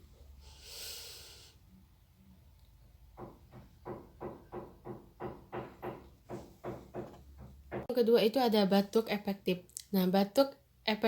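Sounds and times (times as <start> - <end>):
breath: 0.4 - 1.6
rapid ringing knocks: 3.2 - 7.9.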